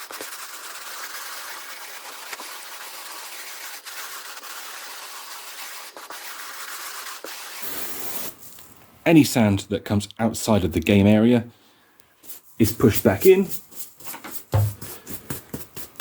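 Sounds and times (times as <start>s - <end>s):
brush scrubbing carpet: 0.0s - 8.2s, 12.2s - 16.0s.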